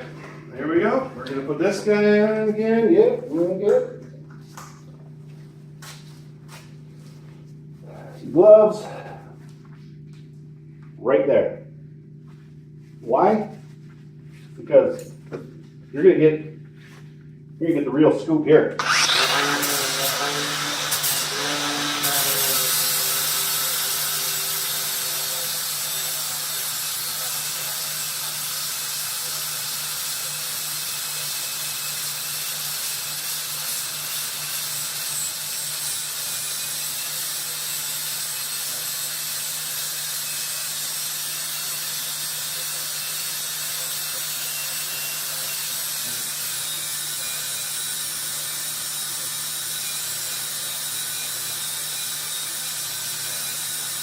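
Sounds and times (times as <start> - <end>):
angle grinder grinding metal: 18.8 - 54.0.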